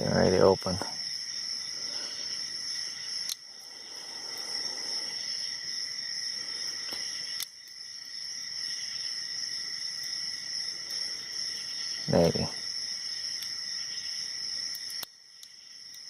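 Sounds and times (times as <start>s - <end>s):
high-pitched ringing hiss: 0.0s - 16.0s.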